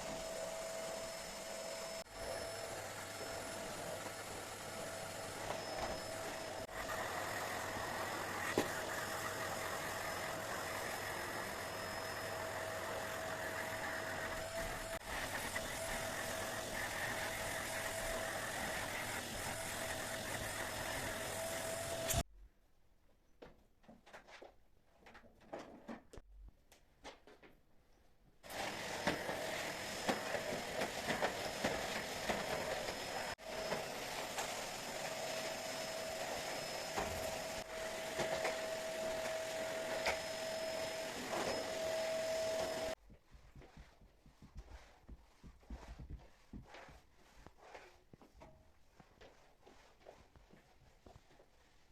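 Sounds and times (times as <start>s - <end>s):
vacuum cleaner motor whining: 0.0s - 22.2s, 28.5s - 43.0s.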